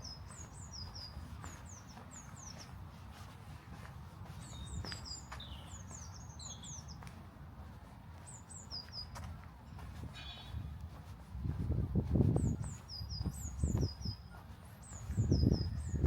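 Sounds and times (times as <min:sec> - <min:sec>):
songbirds chirping: 0:00.0 - 0:16.0
steady low rumble: 0:09.7 - 0:14.2.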